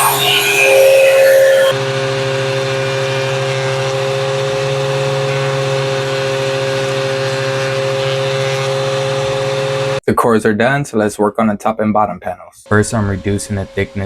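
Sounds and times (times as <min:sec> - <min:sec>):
power planer motor whining: 0:00.0 - 0:10.0.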